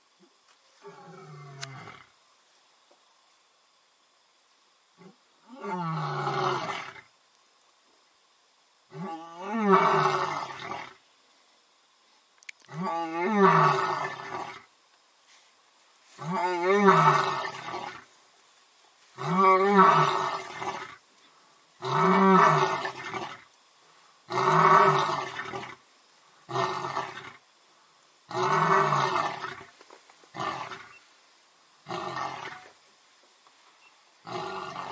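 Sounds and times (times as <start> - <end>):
animal roars: 24.3 - 25.8, 28.3 - 29.6, 31.9 - 32.7, 34.2 - 34.9.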